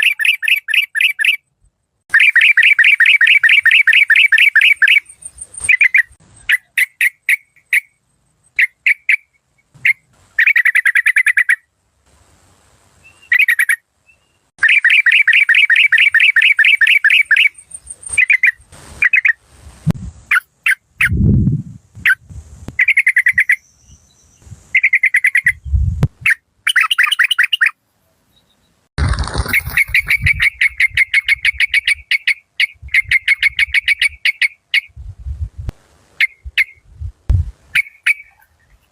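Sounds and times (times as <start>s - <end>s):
bird chattering trills: 0.0s - 1.4s, 2.1s - 11.7s, 13.1s - 13.8s, 14.6s - 19.4s, 22.8s - 23.8s, 24.8s - 25.6s, 26.2s - 27.7s, 29.4s - 34.9s, 37.8s - 38.9s
low thumps: 25.7s - 26.2s.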